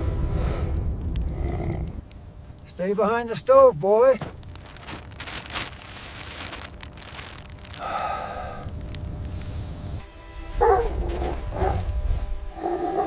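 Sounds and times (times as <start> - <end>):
dogs barking: 10.6 - 11.9.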